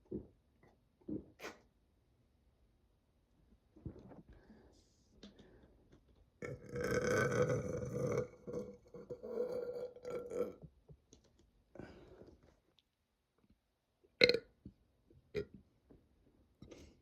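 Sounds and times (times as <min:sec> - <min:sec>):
person burping: 0:06.4 - 0:10.6, 0:14.2 - 0:14.4.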